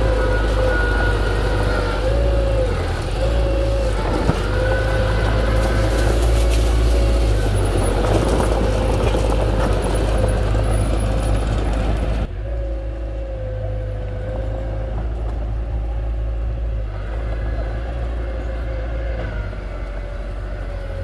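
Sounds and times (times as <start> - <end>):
diesel engine running: 0.0 - 21.0
whining tone: 0.0 - 21.0.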